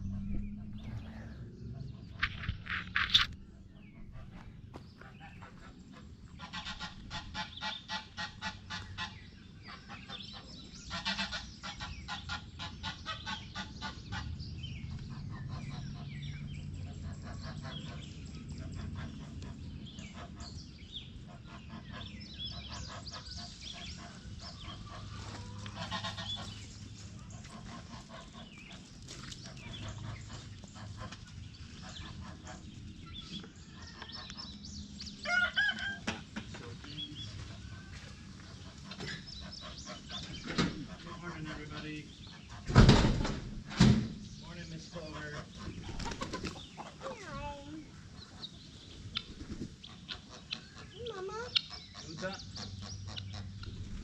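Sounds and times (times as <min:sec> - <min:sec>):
poultry calling rapidly: 0:05.0 - 0:14.4, 0:15.0 - 0:34.6, 0:38.4 - 0:43.1, 0:44.4 - 0:54.0.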